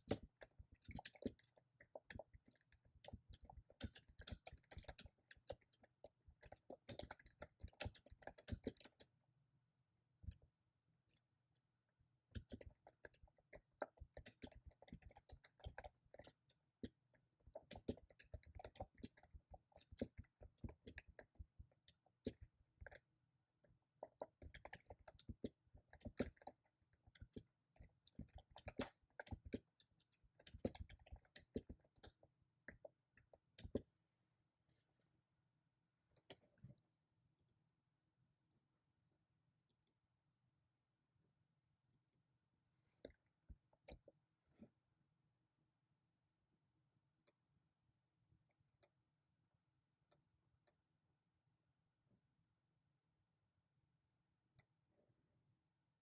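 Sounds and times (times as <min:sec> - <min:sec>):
faint keyboard typing: 0:00.0 - 0:09.2, 0:12.3 - 0:34.0.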